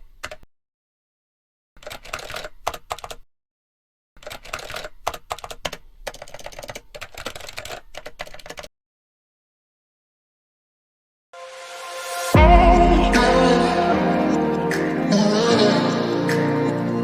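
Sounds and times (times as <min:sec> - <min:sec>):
rapid clatter of small clicks: 0:04.2 - 0:08.7.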